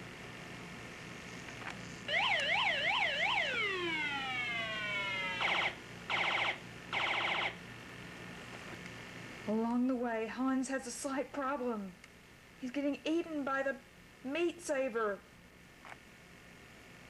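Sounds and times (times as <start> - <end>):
police siren wailing: 2.1 - 7.6.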